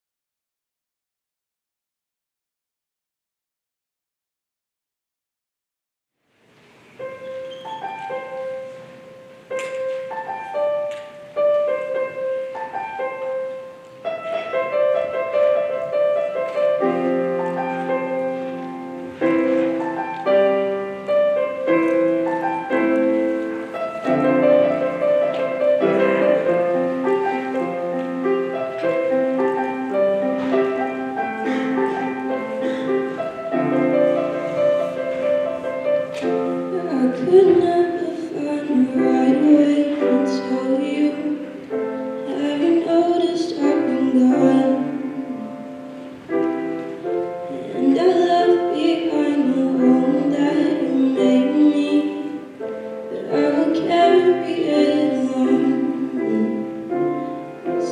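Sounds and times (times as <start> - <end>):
gentle piano melody with chords: 6.8 - 57.9.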